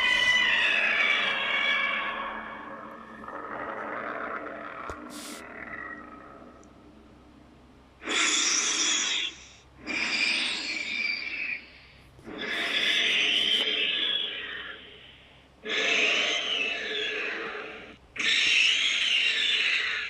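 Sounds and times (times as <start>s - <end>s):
hoarse monster roars: 0.0s - 6.6s, 15.6s - 20.0s.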